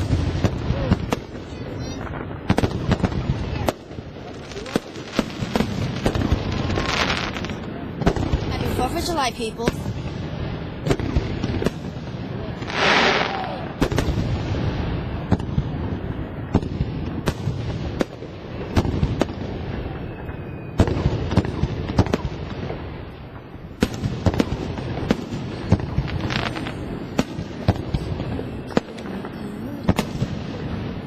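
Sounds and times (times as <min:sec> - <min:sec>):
firework shells bursting: 0:23.8 - 0:31.0.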